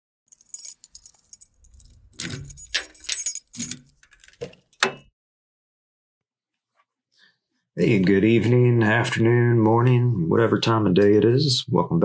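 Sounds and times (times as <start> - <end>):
small metal objects clinking: 0.3 - 4.5.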